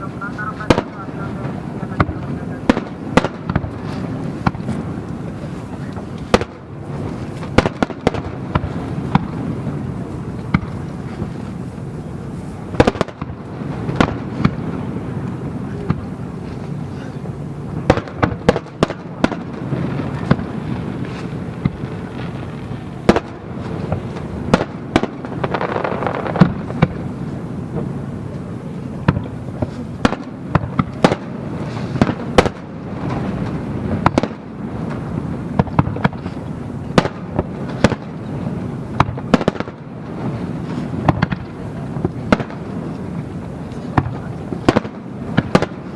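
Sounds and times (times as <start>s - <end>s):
steady rumbling background: 0.0s - 7.4s
fireworks bursting: 0.0s - 45.9s.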